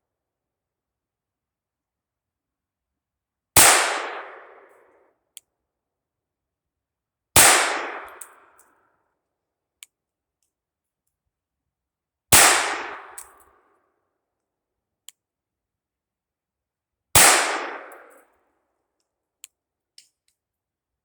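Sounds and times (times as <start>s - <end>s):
pistol shots: 7.4s - 8.2s, 12.4s - 13.1s, 17.2s - 17.8s.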